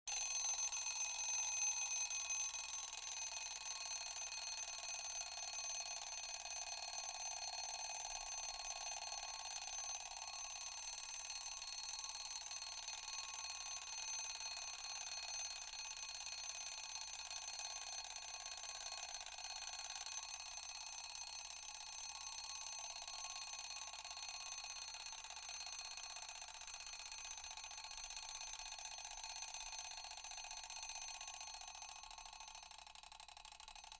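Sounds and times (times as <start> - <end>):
alarm clock bell ringing: 0.1 - 7.2, 9.0 - 16.4.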